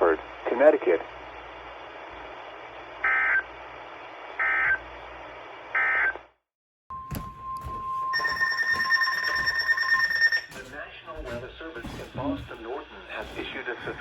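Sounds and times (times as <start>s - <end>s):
radio hiss: 0.0s - 2.0s
screeching digital data tones: 8.1s - 10.5s.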